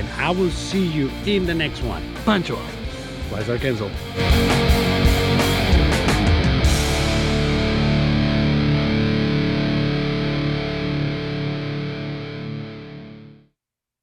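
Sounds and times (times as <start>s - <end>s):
distorted electric guitar chord: 3.9s - 13.4s.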